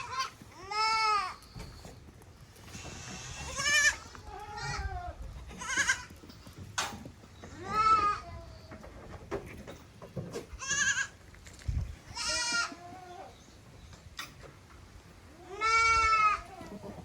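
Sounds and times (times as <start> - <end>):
goats bleating: 0.0 - 1.4, 2.8 - 6.2, 10.6 - 11.2, 12.1 - 13.3, 15.3 - 17.0.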